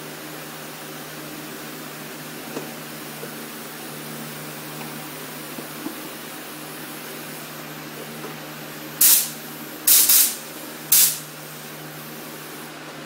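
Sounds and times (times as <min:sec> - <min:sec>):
steady background hum: 0:00.0 - 0:13.0
spray gun hissing bursts: 0:09.0 - 0:12.8.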